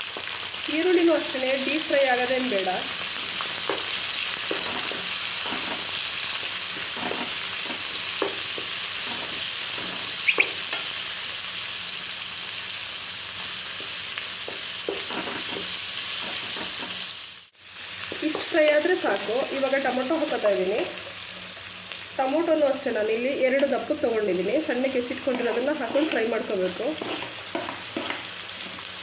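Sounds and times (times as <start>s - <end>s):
onions sizzling in hot oil: 0.0s - 29.0s
spatula scraping a pan: 2.9s - 11.0s, 13.8s - 17.2s, 24.5s - 29.0s.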